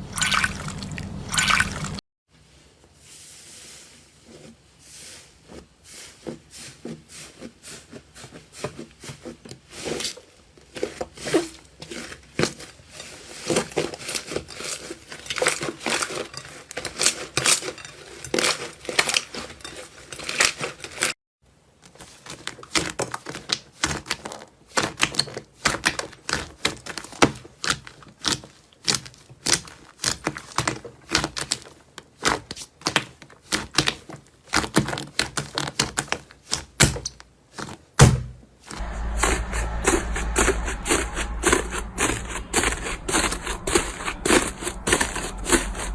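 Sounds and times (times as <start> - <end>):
low hum: 38.8 - 45.9.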